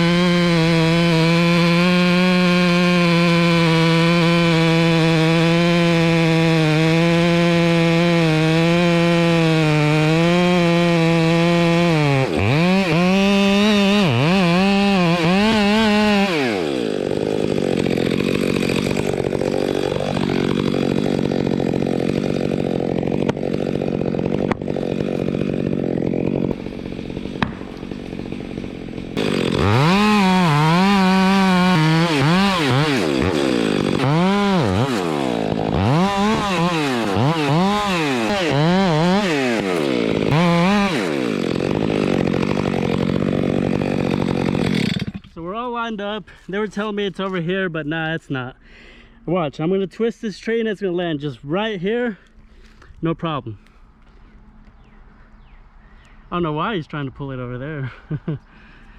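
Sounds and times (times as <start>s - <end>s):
chainsaw revving: 0.0s - 45.5s, 57.8s - 58.9s.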